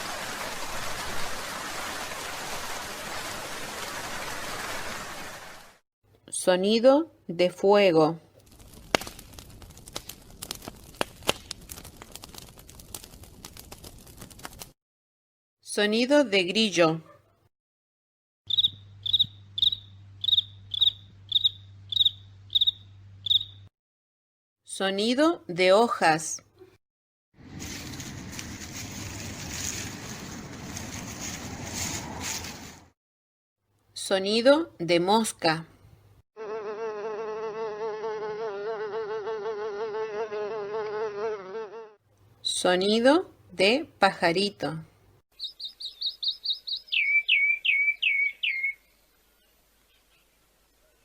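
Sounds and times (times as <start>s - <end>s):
cricket chirping: 18.5s - 23.6s
housefly buzzing: 36.4s - 42.0s.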